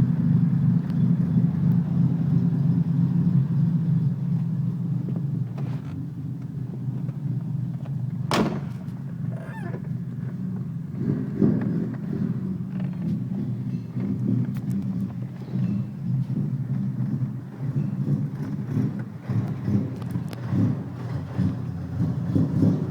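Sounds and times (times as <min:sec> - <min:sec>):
car engine idling: 0:00.0 - 0:22.9.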